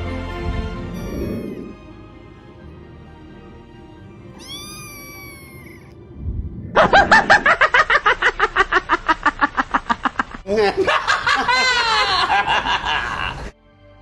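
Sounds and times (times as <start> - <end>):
kitten meowing: 4.3 - 5.9.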